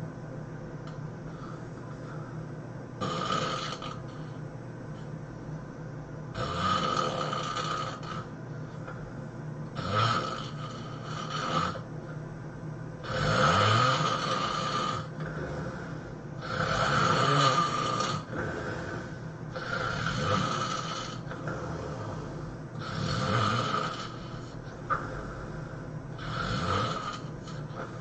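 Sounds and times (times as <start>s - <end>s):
person snoring: 3.0s - 4.4s, 6.3s - 8.3s, 9.8s - 11.8s, 13.0s - 28.0s.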